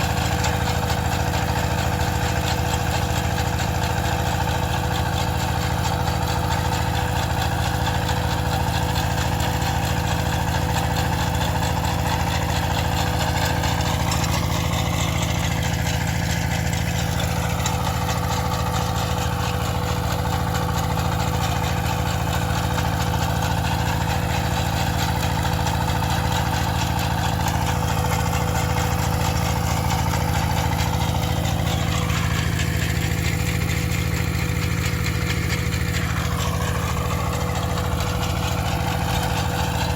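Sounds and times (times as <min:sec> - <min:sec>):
farm machine engine running: 0:00.0 - 0:39.9.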